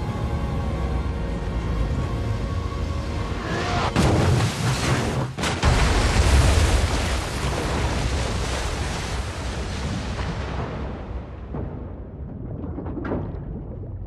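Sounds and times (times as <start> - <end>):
faint tense music: 0.0 - 4.2
steady low rumble: 9.3 - 14.0.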